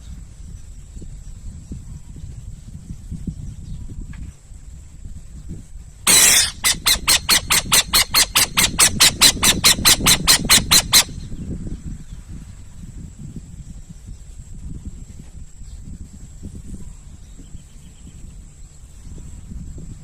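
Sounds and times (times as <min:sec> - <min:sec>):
rasping hisses: 0:06.1 - 0:11.0
owl screeching: 0:06.1 - 0:11.2.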